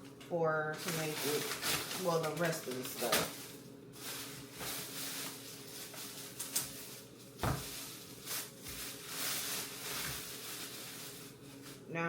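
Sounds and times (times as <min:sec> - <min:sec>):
rustling: 0:00.8 - 0:11.9
objects knocking on a counter: 0:07.4 - 0:07.7.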